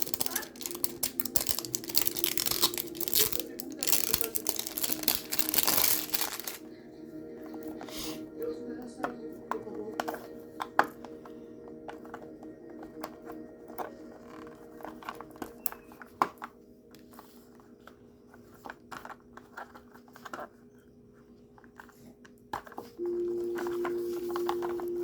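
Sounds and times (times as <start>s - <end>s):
plastic packaging crinkling and clicking: 0.0s - 6.7s, 9.8s - 20.8s, 21.5s - 25.0s.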